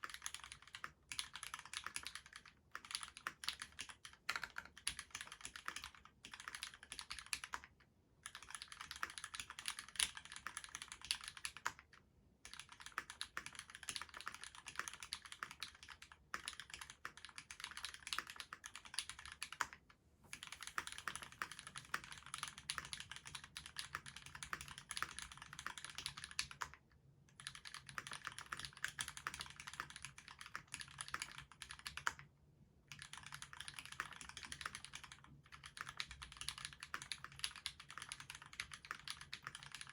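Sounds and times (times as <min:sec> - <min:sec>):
fast typing on mechanical keyboard: 0:00.0 - 0:32.3, 0:32.9 - 0:39.9.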